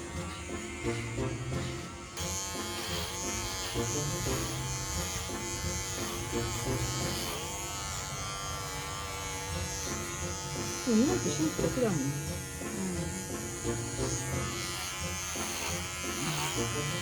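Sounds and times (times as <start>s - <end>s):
electric clippers buzzing: 0.0s - 17.0s.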